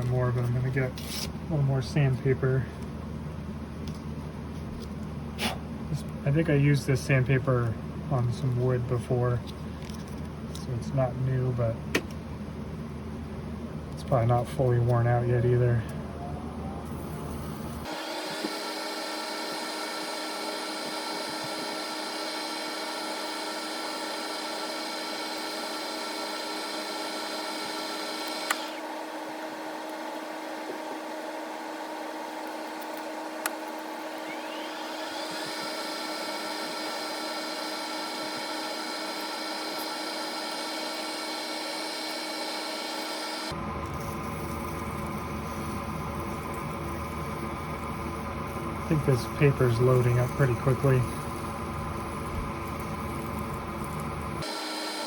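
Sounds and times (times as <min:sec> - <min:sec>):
lathe motor whining: 0:17.0 - 0:55.0.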